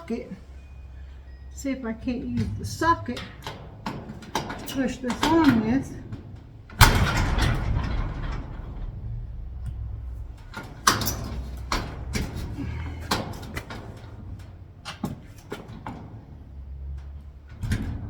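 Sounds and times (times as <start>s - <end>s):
metal garage door rattling: 0.0s - 18.0s.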